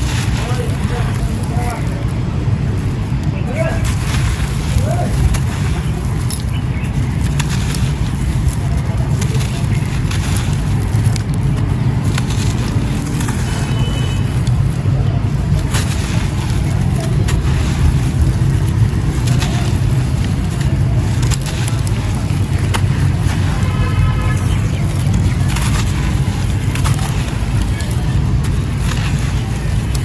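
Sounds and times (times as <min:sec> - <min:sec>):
low rumble: 0:00.0 - 0:30.0
sand-cement chunks being crushed: 0:00.0 - 0:30.0
sharp cracks: 0:00.0 - 0:30.0.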